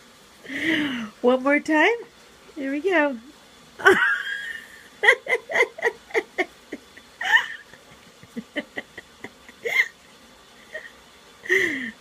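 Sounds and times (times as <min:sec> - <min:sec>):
high-pitched laughter: 0:03.8 - 0:10.1.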